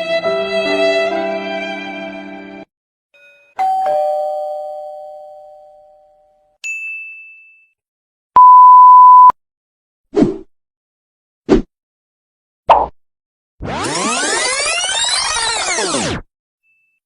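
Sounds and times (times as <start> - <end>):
flat censor beep: 8.4 - 9.4.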